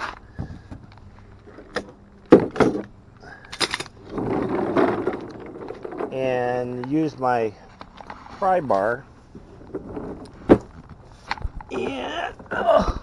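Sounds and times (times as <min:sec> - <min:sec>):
knocks and clanks: 0:03.5 - 0:06.3
scraping and rustling: 0:03.7 - 0:13.0.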